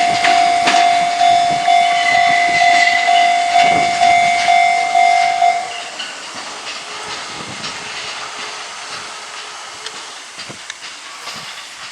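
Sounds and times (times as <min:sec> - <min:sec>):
level crossing bell clanging: 0:00.0 - 0:06.8
departing train hiss: 0:00.0 - 0:11.9
wheels clicking on rail: 0:00.0 - 0:11.9.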